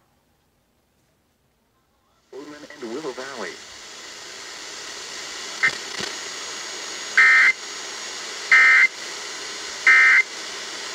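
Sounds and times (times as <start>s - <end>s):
steady hiss: 2.1s - 10.9s.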